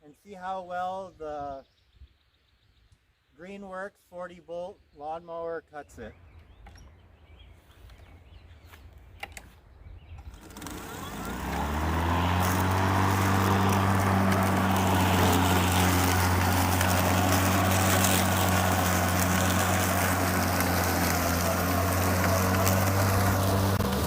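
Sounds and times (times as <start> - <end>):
lawn mower clicks: 9.2 - 9.6, 10.2 - 24.0
electric lawn mower humming: 10.2 - 24.0.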